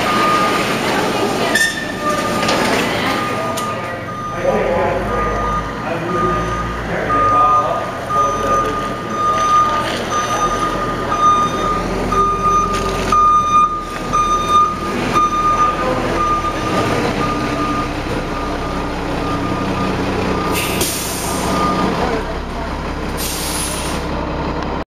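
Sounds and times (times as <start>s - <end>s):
reversing alarm beeping: 0.0s - 0.8s, 1.5s - 22.1s
diesel engine running: 0.0s - 24.8s
air brakes hissing: 20.5s - 21.6s, 23.2s - 24.1s.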